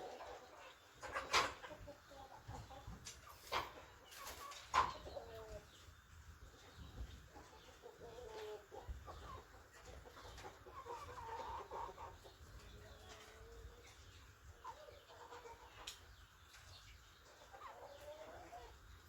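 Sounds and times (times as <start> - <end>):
chickens clucking: 0.0 - 19.0.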